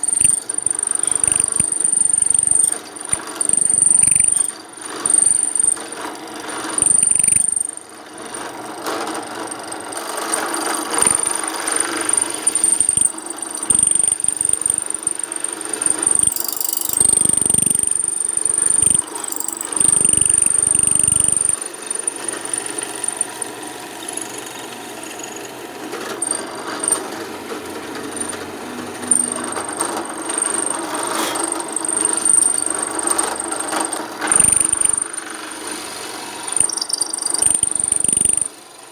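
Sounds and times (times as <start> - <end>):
electric drill boring into wood: 0.0 - 38.9.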